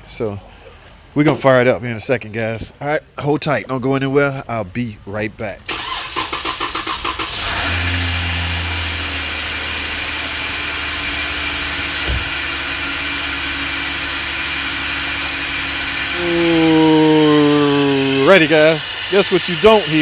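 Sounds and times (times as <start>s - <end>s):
car engine cranking and idling: 0.0s - 20.0s
steady vacuum hiss: 14.8s - 20.0s.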